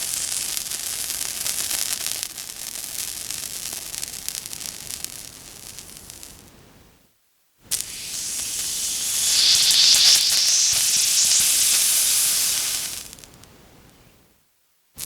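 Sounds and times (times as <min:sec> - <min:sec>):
water sizzling on hot surface: 0:07.7 - 0:13.2.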